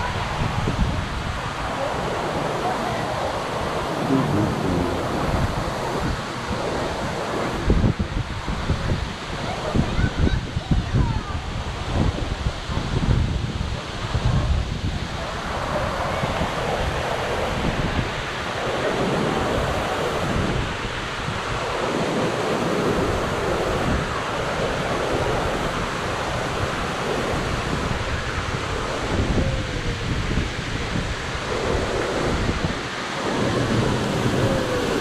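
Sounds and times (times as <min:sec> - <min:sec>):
waterfall rushing: 0:01.8 - 0:07.7
wind buffeting microphone: 0:03.6 - 0:35.0.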